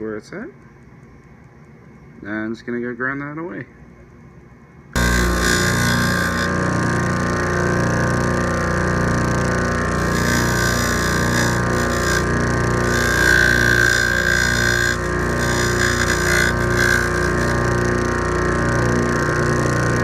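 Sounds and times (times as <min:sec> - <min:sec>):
electric grinder grinding metal: 0:05.0 - 0:20.0.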